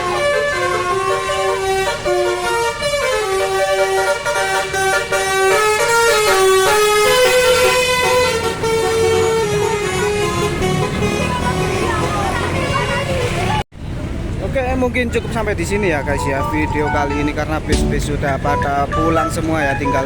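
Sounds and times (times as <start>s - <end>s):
musical bus horn tune: 0.0s - 12.0s.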